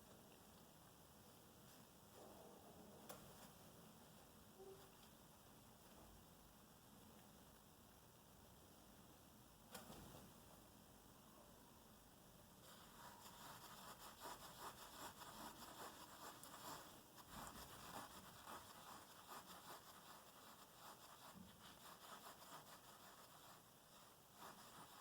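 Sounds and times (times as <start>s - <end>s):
kitten claws scratching: 12.7s - 25.0s.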